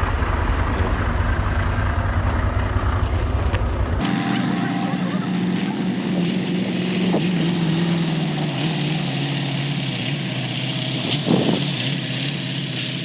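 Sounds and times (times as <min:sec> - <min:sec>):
truck diesel engine running: 0:00.0 - 0:13.0.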